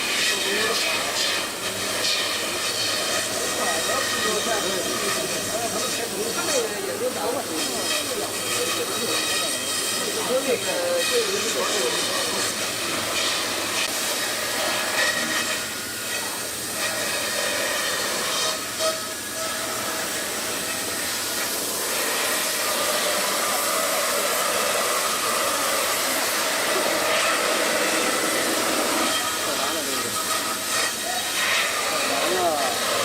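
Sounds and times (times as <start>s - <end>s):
foam-cutting router running: 0.0s - 33.0s.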